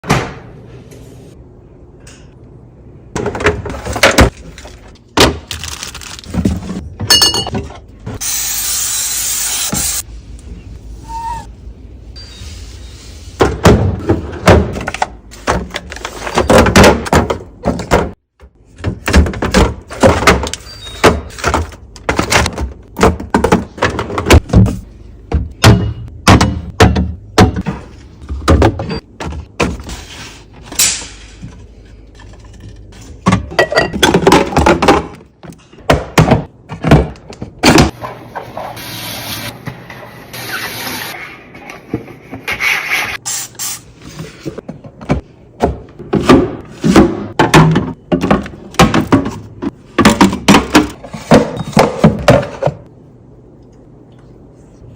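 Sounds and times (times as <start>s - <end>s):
food containers knocking and rattling: 13.4s - 29.8s, 32.2s - 38.2s, 44.6s - 52.9s.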